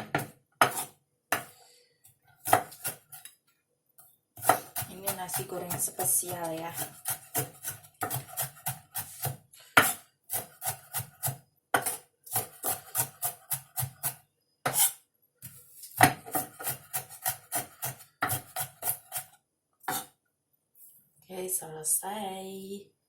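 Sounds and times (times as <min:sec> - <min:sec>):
knife chopping on cutting board: 0:00.0 - 0:01.5, 0:02.4 - 0:03.2, 0:04.4 - 0:15.0, 0:15.9 - 0:20.1.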